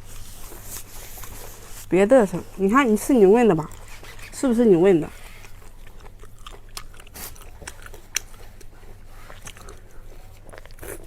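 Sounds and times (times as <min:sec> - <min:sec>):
food crunching: 0:03.0 - 0:11.0
person chewing food: 0:03.6 - 0:04.4, 0:05.1 - 0:11.0
wet mouth clicks: 0:05.4 - 0:08.8.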